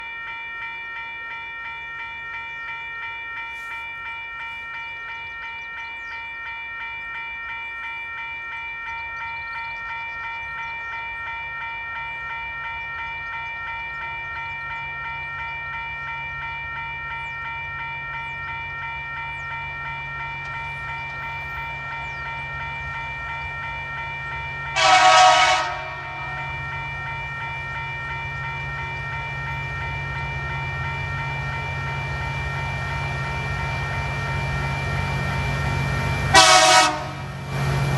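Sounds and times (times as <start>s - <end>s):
level crossing bells ringing: 0.0s - 37.9s
diesel locomotives rumbling: 9.0s - 37.9s
locomotive horn blast: 24.8s - 26.5s, 36.3s - 37.3s.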